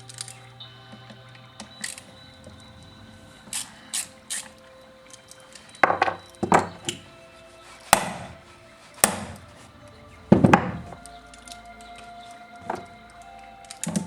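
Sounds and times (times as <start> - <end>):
tools knocking and clinking: 5.5 - 7.0.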